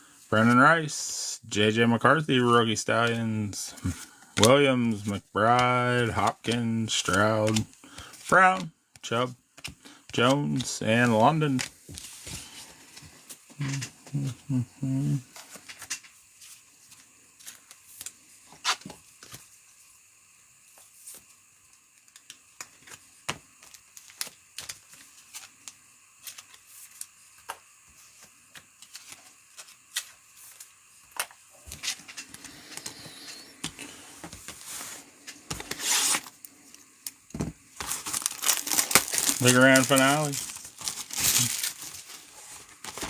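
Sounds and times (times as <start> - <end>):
card rustle: 2.9 - 14.3, 23.6 - 36.4, 37.7 - 43.0
cards clicking and snapping: 5.4 - 8.7, 22.0 - 27.6.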